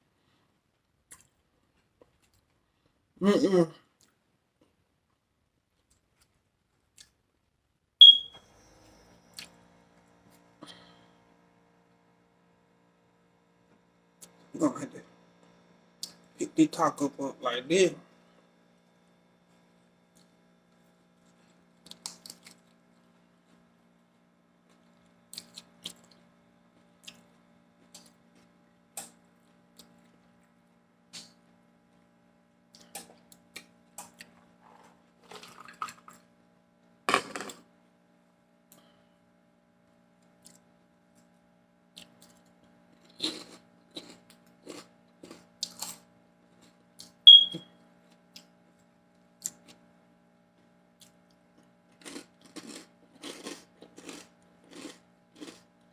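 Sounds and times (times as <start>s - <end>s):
crunchy chewing: 24.9s - 26.2s, 42.0s - 47.2s, 51.0s - 55.8s.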